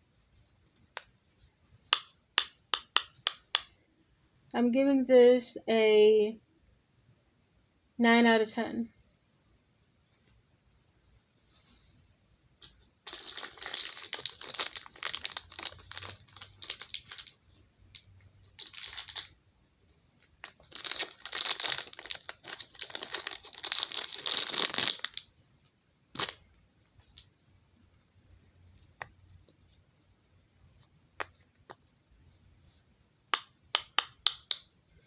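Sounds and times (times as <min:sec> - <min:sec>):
plastic wrapping crackling: 0:13.0 - 0:19.4, 0:20.3 - 0:25.3, 0:26.1 - 0:26.4.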